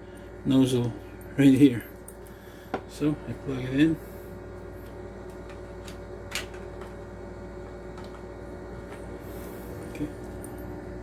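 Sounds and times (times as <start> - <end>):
air pump buzzing hum: 0.0 - 11.0.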